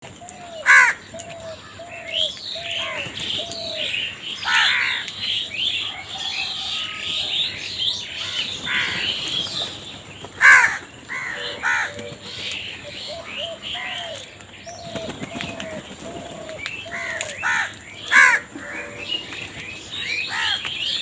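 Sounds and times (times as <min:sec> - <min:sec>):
small birds chirping: 0:00.0 - 0:21.0
crows cawing: 0:00.5 - 0:01.9, 0:04.4 - 0:05.1, 0:08.2 - 0:09.2, 0:10.4 - 0:12.3, 0:16.2 - 0:19.1, 0:20.3 - 0:20.6.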